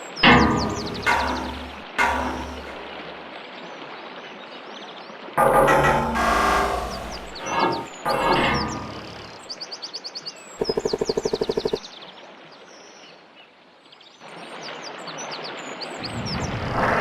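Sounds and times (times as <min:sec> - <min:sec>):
rapid rattling bird trill: 0:10.6 - 0:11.8.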